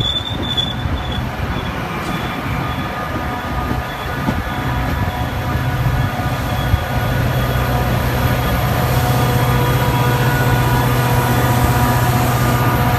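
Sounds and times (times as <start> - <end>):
train rumbling at speed: 0.0 - 12.9.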